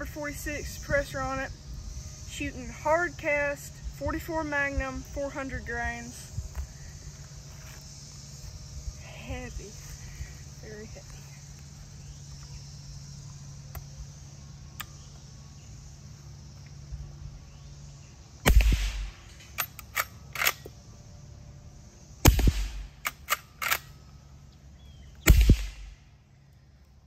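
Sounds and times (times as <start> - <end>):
suppressed rifle shots: 18.4 - 20.7, 22.2 - 23.9, 25.2 - 26.0
rifle lever metallic clicks: 19.4 - 20.7, 23.0 - 23.9.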